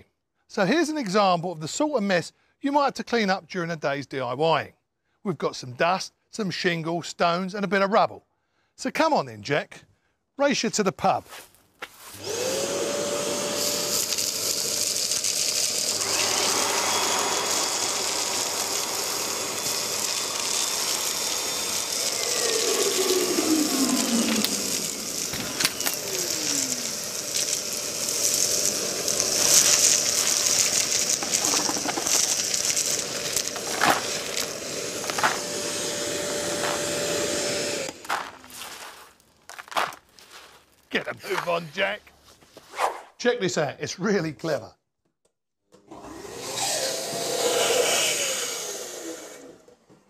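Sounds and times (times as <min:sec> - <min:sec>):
wet and dry vacuum running: 0:12.2 - 0:38.5, 0:45.8 - 0:49.7
debris clicking in vacuum hose: 0:13.8 - 0:35.5.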